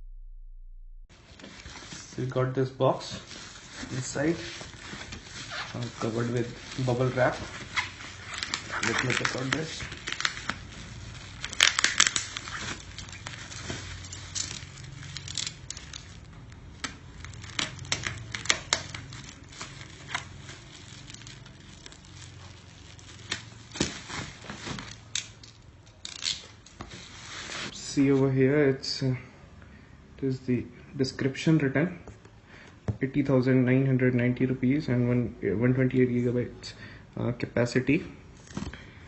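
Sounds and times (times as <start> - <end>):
bubble wrap crinkling and tearing: 1.1 - 27.8.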